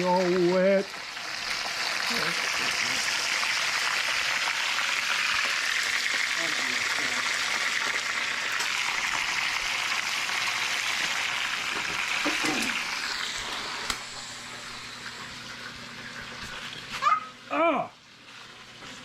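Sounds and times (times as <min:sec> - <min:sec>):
fish sizzling in hot oil: 0:00.0 - 0:17.0, 0:18.0 - 0:19.0.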